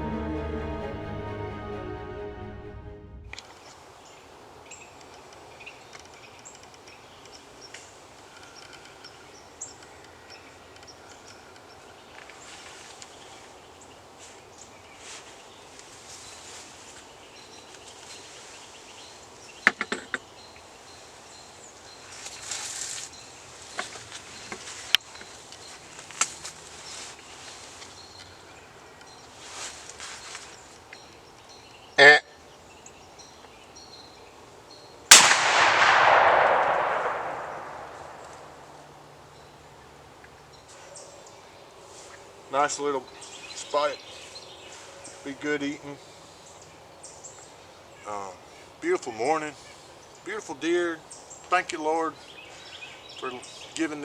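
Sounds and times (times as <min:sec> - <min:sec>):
distant bird calls: 0:30.2 - 0:41.8.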